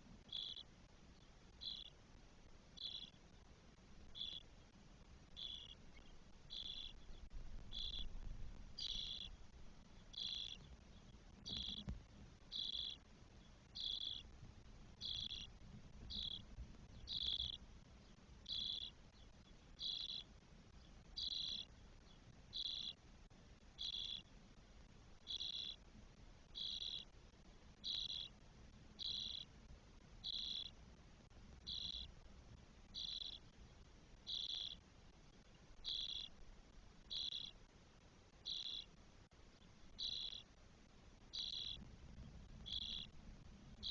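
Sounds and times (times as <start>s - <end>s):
nestlings begging calls: 0.3s - 0.6s, 1.6s - 2.0s, 2.8s - 3.2s, 4.1s - 4.5s, 5.4s - 8.2s, 8.8s - 9.4s, 10.0s - 11.9s, 12.5s - 13.1s, 13.7s - 14.3s, 15.0s - 15.5s, 16.1s - 17.6s, 18.4s - 19.0s, 19.8s - 20.3s, 21.1s - 21.7s, 22.5s - 23.0s, 23.8s - 24.3s, 25.2s - 25.8s, 26.6s - 27.1s, 27.8s - 28.4s, 29.0s - 29.5s, 30.2s - 30.7s, 31.7s - 32.1s, 32.9s - 33.4s, 34.3s - 34.8s, 35.8s - 36.4s, 37.1s - 37.6s, 38.4s - 39.0s, 40.0s - 40.5s, 41.3s - 41.8s, 42.6s - 43.2s.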